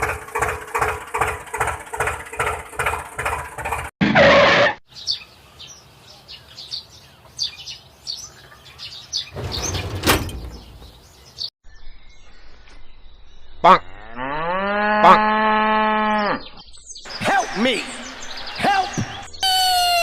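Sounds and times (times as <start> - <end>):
bird chirps: 4.9 - 13.6, 16.4 - 20.0
cow mooing: 14.0 - 16.4.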